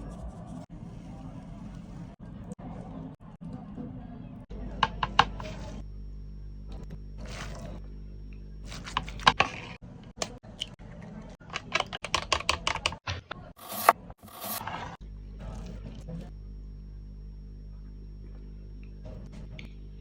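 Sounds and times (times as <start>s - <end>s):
faint hum: 0.0s - 20.0s
food preparation clicks and taps: 4.7s - 5.5s.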